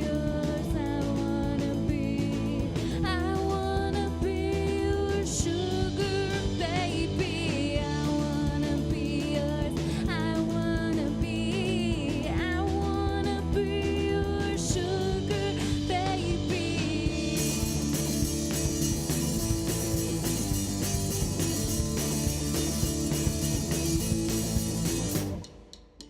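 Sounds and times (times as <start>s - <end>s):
person singing: 0.0s - 17.8s
punk band playing: 0.0s - 26.0s.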